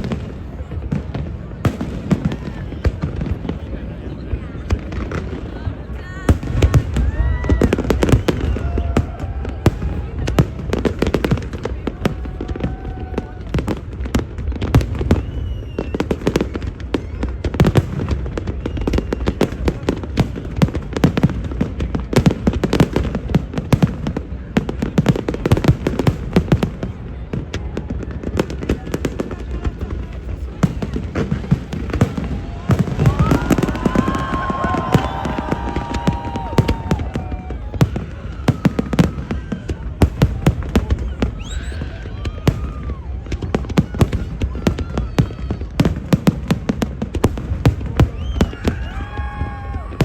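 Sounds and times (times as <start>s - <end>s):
aerial fireworks bangs: 6.2s - 50.0s
rising firework whistle: 14.9s - 17.3s, 32.0s - 39.8s, 40.8s - 43.2s, 48.0s - 50.0s.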